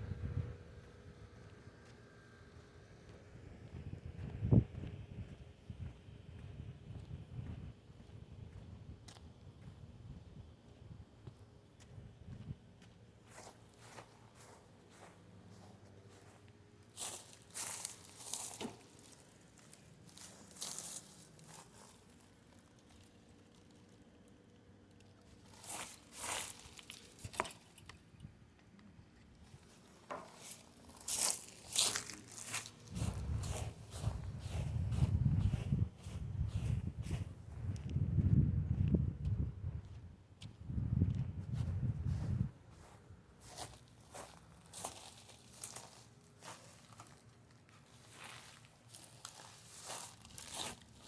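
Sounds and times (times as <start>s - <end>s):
faint low hum: 0.0s - 51.0s
crunching and rustling: 13.2s - 28.0s, 29.4s - 37.4s, 42.7s - 51.0s.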